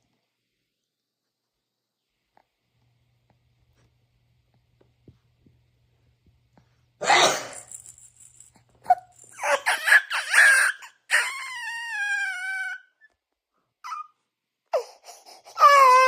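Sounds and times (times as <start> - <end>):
boy sneezing loudly: 7.0 - 7.7
baby crying: 9.4 - 13.0, 13.8 - 16.0.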